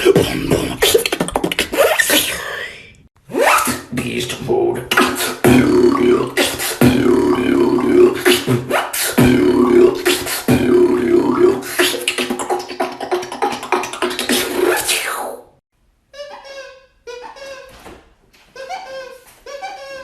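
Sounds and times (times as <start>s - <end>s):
person beatboxing: 0.0s - 15.5s.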